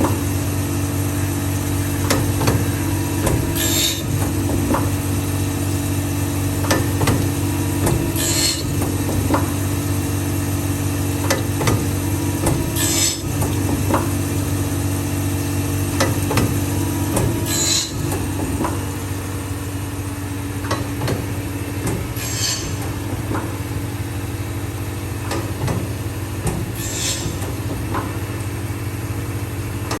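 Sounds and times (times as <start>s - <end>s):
grinding machine motor hum: 0.0s - 29.9s
mechanism clicks and knocks: 2.0s - 5.1s, 6.6s - 9.7s, 11.2s - 14.3s, 15.9s - 19.0s, 19.8s - 24.0s, 24.7s - 28.6s.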